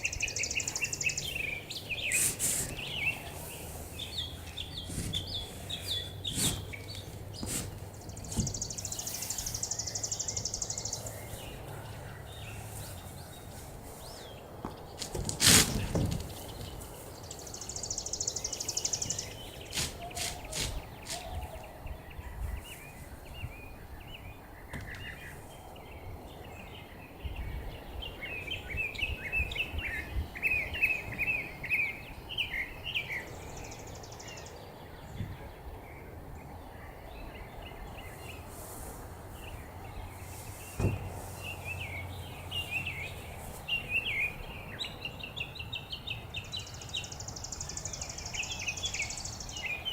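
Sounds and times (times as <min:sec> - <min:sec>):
low wind rumble: 0:00.0 - 0:49.9
songbirds chirping: 0:00.0 - 0:49.9
sharp knocks: 0:40.8 - 0:41.1.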